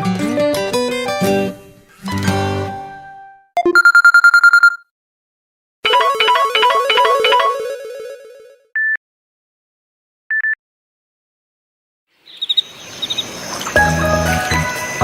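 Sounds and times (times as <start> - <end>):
melodic ringtone: 3.6 - 4.8, 5.8 - 8.6
quick triple beep: 3.6 - 4.8
short high electronic beep: 3.6 - 4.8
rising hiss with high chirps: 12.2 - 15.0.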